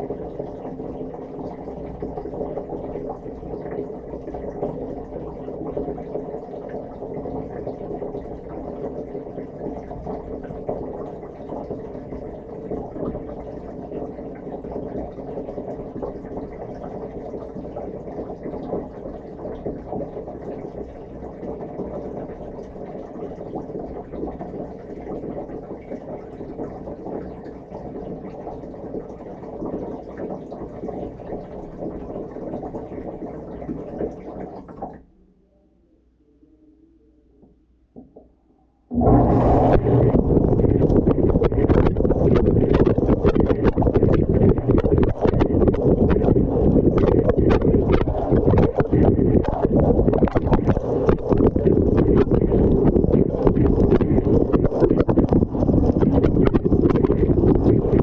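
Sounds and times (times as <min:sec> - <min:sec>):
dishwasher pump humming: 0:36.8 - 0:58.0.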